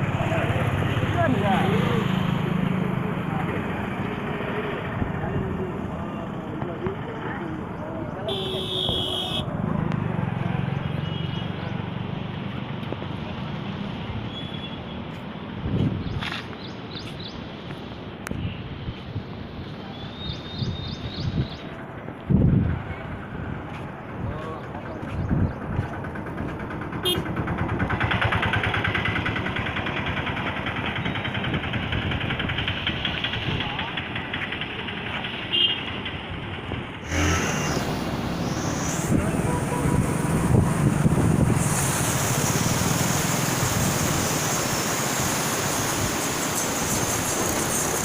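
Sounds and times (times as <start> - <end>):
passing vehicle engine rumble: 0.0 - 18.2, 19.1 - 48.0
steady rushing noise: 21.1 - 48.0
flood water rushing: 37.0 - 48.0.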